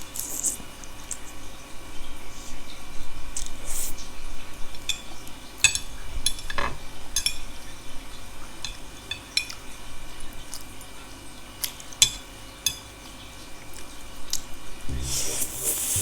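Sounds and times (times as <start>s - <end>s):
cutlery clinking against a bowl: 4.8s - 9.8s, 11.6s - 13.2s.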